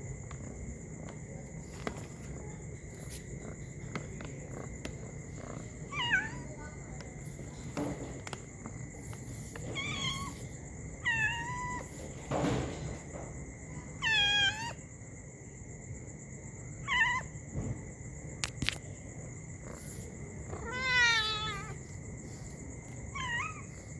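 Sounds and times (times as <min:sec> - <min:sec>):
cat meowing: 0:05.4 - 0:06.6, 0:09.6 - 0:12.0, 0:13.9 - 0:14.8, 0:16.8 - 0:17.3, 0:20.5 - 0:21.8, 0:23.1 - 0:23.7.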